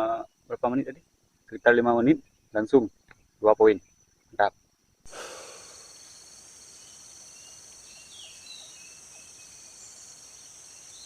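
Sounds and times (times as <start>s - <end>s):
insect drone with pulsed trill: 0.0s - 11.0s.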